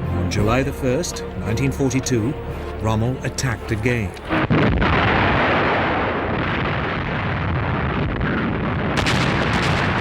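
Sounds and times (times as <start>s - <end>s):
artillery explosions rumble: 4.3s - 10.0s.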